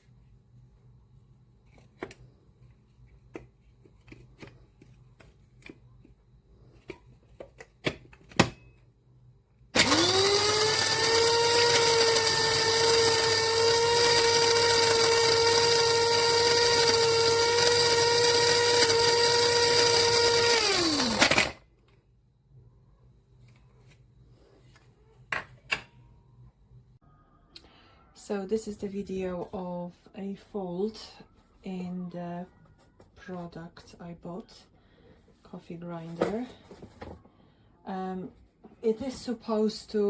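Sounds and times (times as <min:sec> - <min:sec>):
coffee grinder motor whining: 0:09.8 - 0:21.6.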